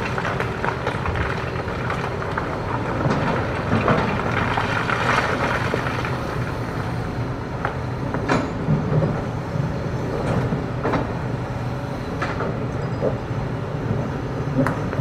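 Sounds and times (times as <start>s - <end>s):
excavator diesel engine running: 0.0s - 15.0s.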